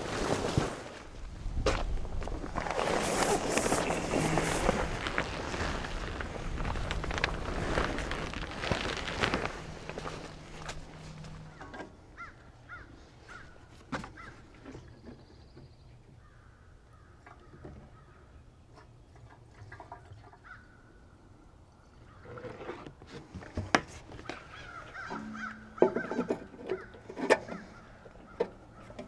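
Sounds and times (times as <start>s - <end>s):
birds calling: 24.1s - 29.0s.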